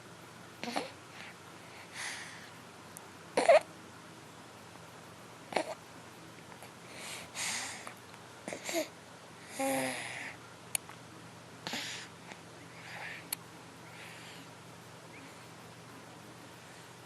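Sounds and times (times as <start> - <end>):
baby snoring: 0.6 - 1.0, 3.4 - 3.7, 5.5 - 5.8, 8.5 - 10.4, 11.7 - 12.1.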